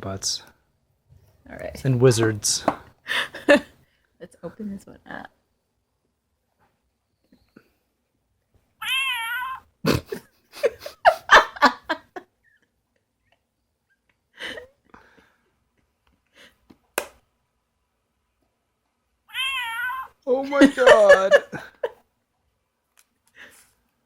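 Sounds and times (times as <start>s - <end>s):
jumbled cat-like sounds: 8.6s - 9.8s, 19.2s - 20.2s
recorded cat meow: 8.8s - 9.7s, 19.2s - 20.2s.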